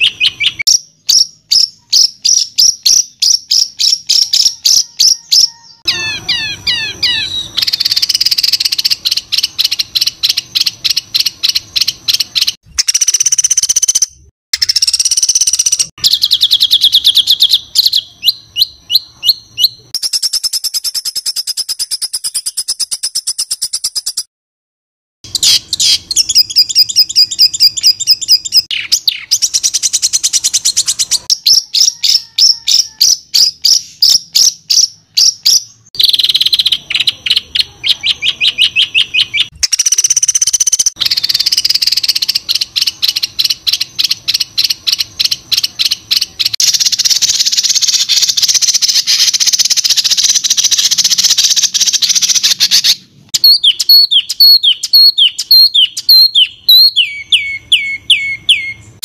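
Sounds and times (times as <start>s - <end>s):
buzzy bird trill: 0.0s - 24.3s, 25.2s - 59.0s
songbird harsh repeated notes: 0.0s - 24.3s, 25.2s - 59.0s
falling bird notes: 4.1s - 8.2s.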